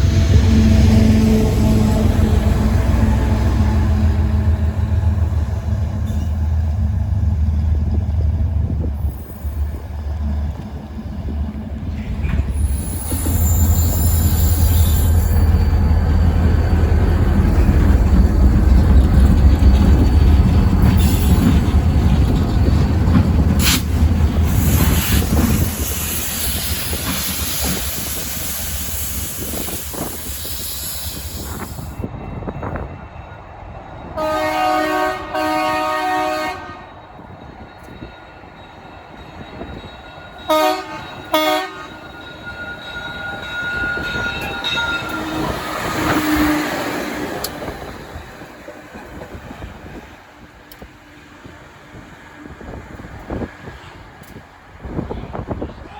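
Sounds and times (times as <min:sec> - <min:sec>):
diesel locomotive horn blasts: 0:00.0 - 0:05.2, 0:34.2 - 0:37.0, 0:40.5 - 0:42.1, 0:44.0 - 0:47.2
train passing with deep rumble: 0:00.0 - 0:55.9.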